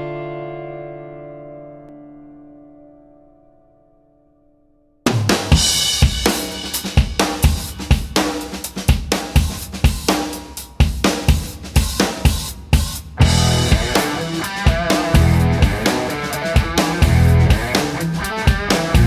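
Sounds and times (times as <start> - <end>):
held guitar chord: 0.0 - 4.5, 13.2 - 19.0
drum-kit music track: 5.1 - 19.0.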